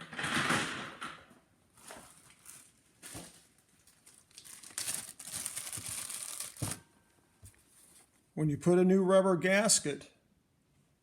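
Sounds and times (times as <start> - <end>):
crinkly rustling: 1.7 - 8.2.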